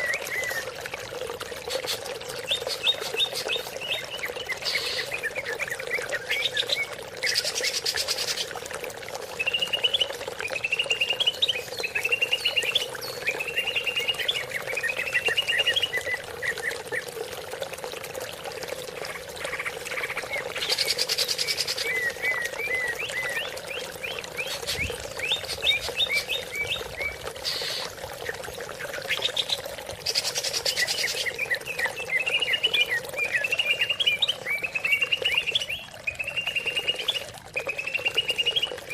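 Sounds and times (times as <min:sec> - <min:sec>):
harsh buzzy bird calls: 0:24.0 - 0:28.0.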